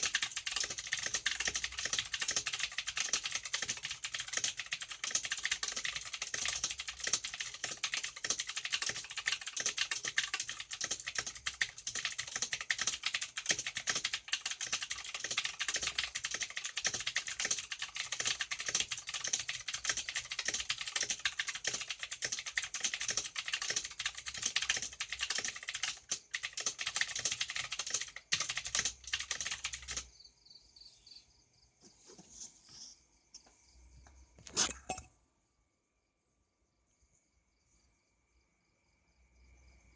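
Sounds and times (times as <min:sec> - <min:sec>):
fast mechanical keyboard typing: 0:00.0 - 0:30.1.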